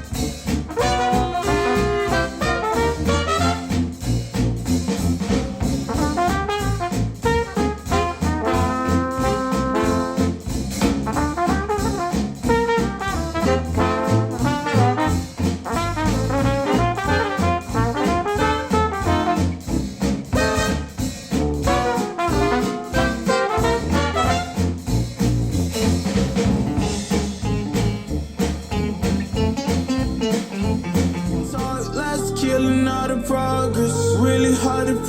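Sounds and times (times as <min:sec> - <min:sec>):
brass-led jazzy instrumental music: 0:00.0 - 0:35.0.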